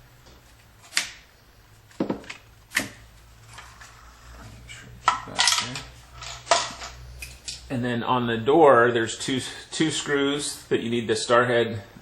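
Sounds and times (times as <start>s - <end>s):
handling noise: 5.0s - 7.7s.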